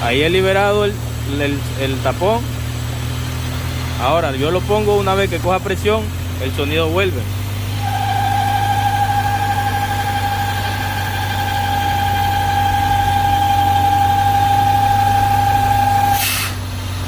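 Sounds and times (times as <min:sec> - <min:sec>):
car engine idling: 0:00.0 - 0:17.0
high-pitched whistle: 0:07.8 - 0:16.6.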